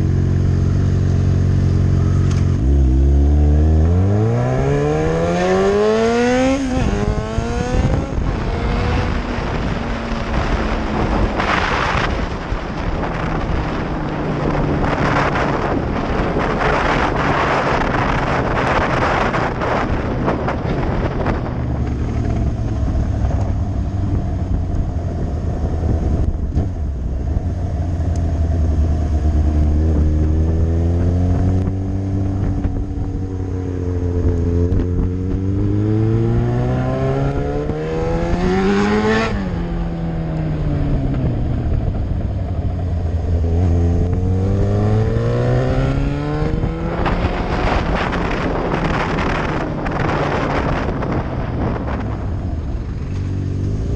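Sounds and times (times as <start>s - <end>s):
motorcycle engine revving: 0.0s - 53.9s
wind buffeting microphone: 1.6s - 53.9s.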